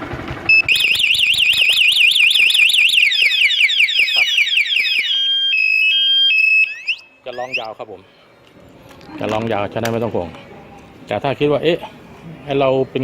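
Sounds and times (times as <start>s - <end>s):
motorcycle alarm siren: 0.4s - 7.8s.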